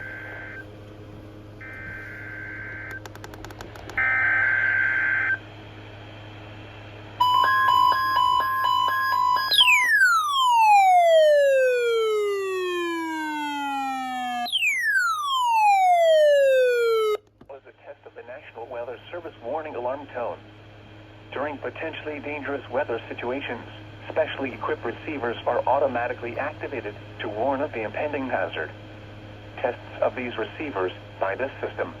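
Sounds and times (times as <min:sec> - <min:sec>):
electronic siren alarm: 0:00.0 - 0:00.7, 0:01.6 - 0:03.1, 0:04.0 - 0:05.4, 0:07.2 - 0:17.2.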